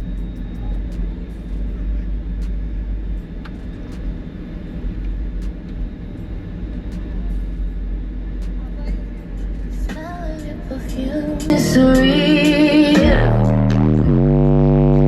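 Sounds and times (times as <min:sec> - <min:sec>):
deep bass booming from subwoofers: 0:11.0 - 0:15.0.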